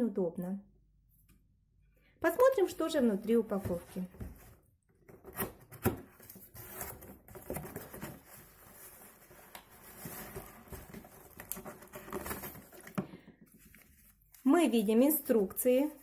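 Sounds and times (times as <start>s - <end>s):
cardboard box rustling: 3.6s - 14.2s.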